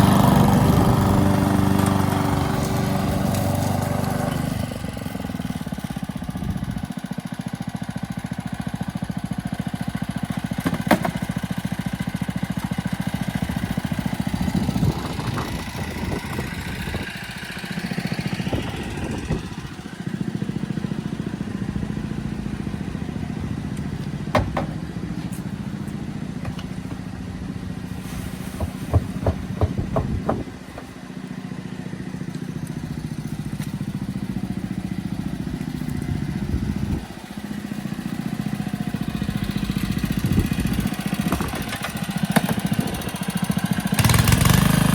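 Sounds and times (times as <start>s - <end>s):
lawn mower engine running: 0.0s - 44.9s
sharp knocks: 24.3s - 24.8s, 28.6s - 30.9s.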